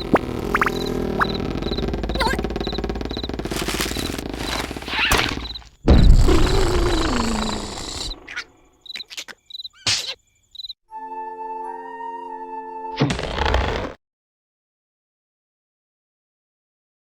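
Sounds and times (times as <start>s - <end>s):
burst with downward sliding tone: 0.0s - 5.0s
crickets chirping: 0.0s - 10.8s.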